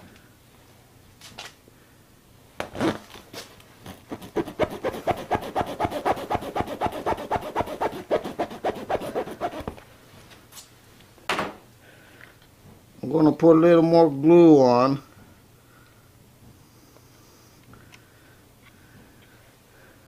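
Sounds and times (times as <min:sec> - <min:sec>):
tire repair tool rasping: 0:03.9 - 0:09.8.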